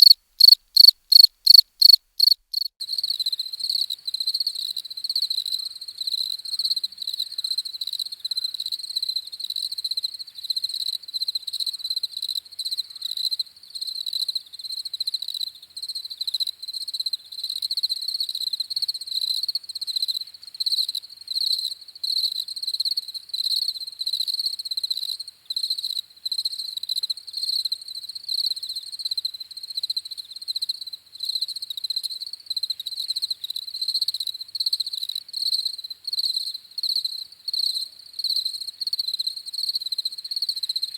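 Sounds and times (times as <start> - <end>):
crickets chirping: 0.0 - 3.9.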